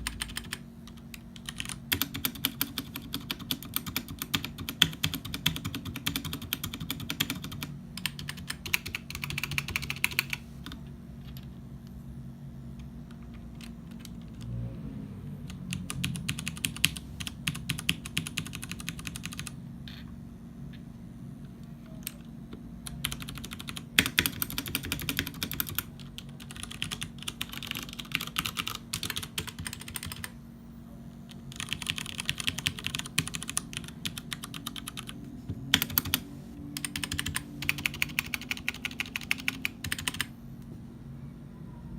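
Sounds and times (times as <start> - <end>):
typing on mechanical keyboard: 0.0 - 11.5, 15.5 - 19.6, 22.0 - 30.4, 31.3 - 36.2, 36.8 - 40.3.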